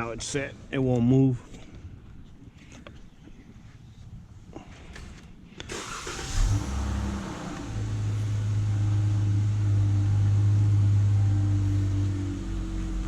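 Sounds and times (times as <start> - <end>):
car engine starting and idling: 5.7 - 13.0.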